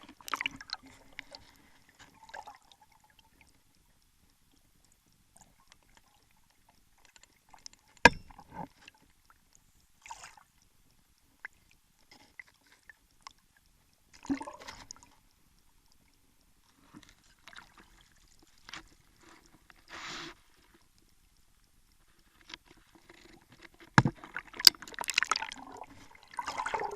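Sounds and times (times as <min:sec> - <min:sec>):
water splashing and gurgling: 0:00.0 - 0:03.6, 0:14.1 - 0:15.2, 0:24.0 - 0:26.9
sharp knocks: 0:08.1 - 0:08.4.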